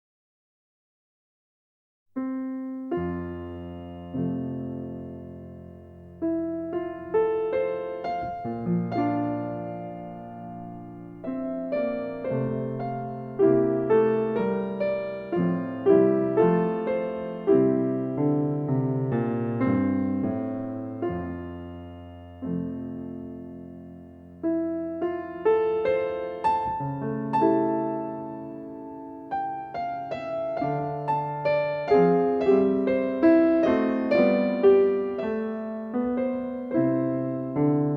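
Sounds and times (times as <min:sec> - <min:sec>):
slow piano music: 0:02.2 - 0:37.9.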